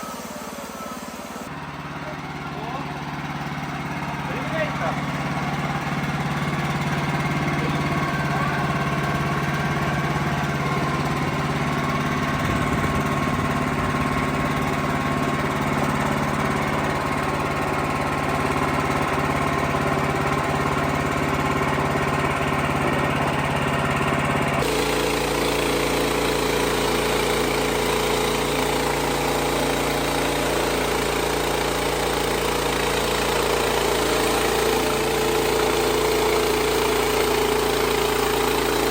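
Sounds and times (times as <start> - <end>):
sawmill engine running: 0.0 - 38.9.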